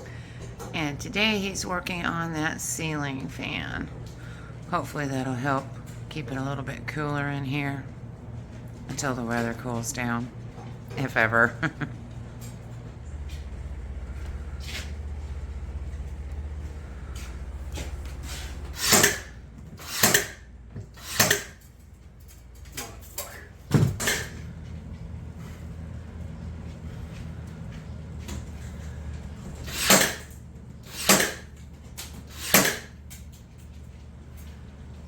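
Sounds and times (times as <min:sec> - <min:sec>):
low steady hum: 0:00.0 - 0:35.0.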